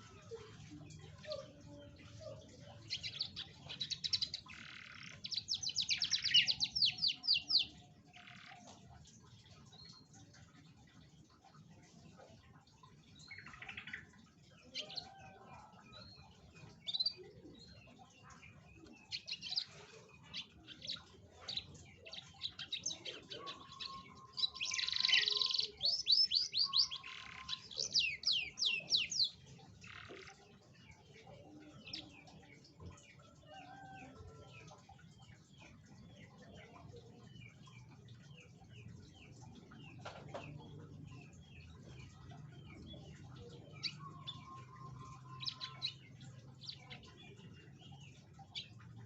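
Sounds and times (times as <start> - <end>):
canary singing: 2.7 - 8.6, 16.2 - 33.0, 40.4 - 49.0.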